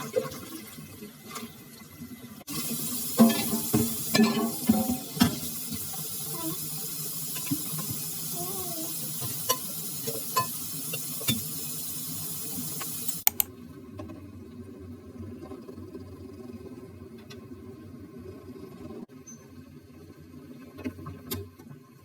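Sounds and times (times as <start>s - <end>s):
food sizzling in a pan: 2.4s - 13.2s.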